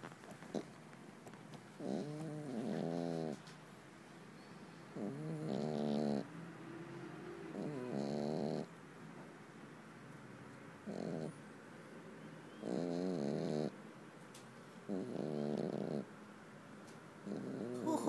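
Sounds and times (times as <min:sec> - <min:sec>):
cat snoring: 0:01.8 - 0:03.4, 0:05.0 - 0:06.3, 0:07.4 - 0:08.7, 0:10.9 - 0:11.4, 0:12.6 - 0:13.7, 0:14.9 - 0:16.1, 0:17.2 - 0:18.0.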